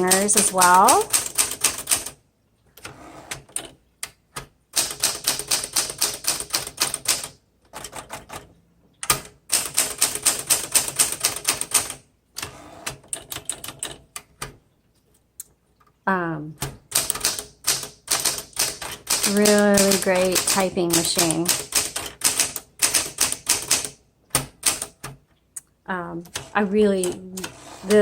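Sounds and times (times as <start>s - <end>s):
typewriter keys clacking: 0.0s - 2.2s, 4.8s - 12.0s, 16.8s - 25.2s, 26.3s - 28.0s.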